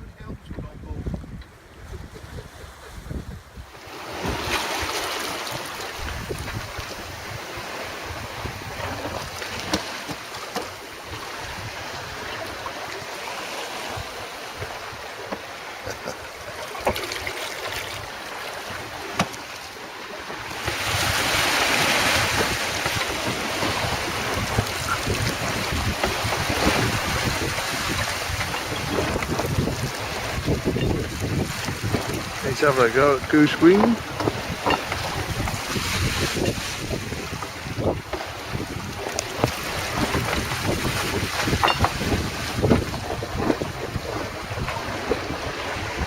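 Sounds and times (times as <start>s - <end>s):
wind buffeting microphone: 0.0s - 15.3s, 20.4s - 46.0s
water rushing along hull: 0.0s - 46.0s.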